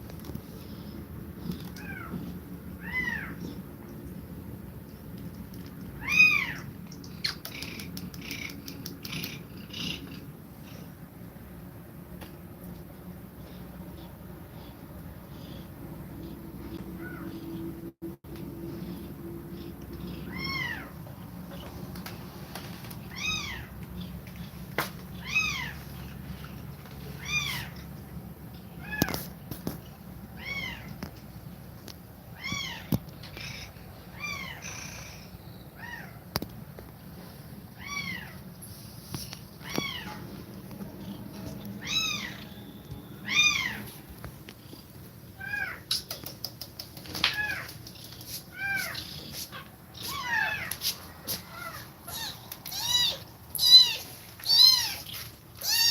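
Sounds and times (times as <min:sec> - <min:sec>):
low steady rumble: 0:00.0 - 0:45.6
kittens mewing: 0:20.0 - 0:21.0, 0:32.3 - 0:36.3, 0:40.9 - 0:44.0, 0:45.4 - 0:55.9.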